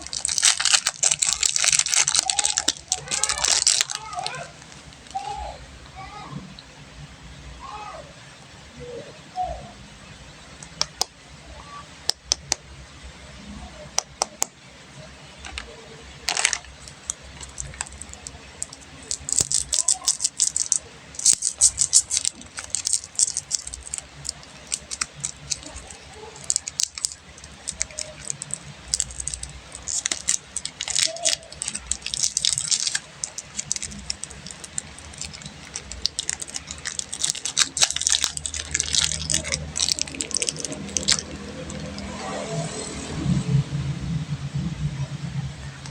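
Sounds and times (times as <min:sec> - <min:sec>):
sharp wrapper clicks: 0:00.0 - 0:05.2, 0:10.6 - 0:11.1, 0:15.4 - 0:42.2
plastic wrappers crinkling: 0:00.0 - 0:05.6, 0:10.5 - 0:11.1, 0:15.2 - 0:42.4.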